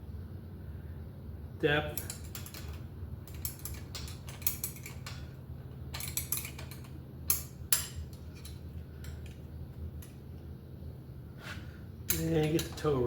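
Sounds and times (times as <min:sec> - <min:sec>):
low steady hum: 0:00.0 - 0:13.0
metallic tool clicks: 0:02.0 - 0:05.2.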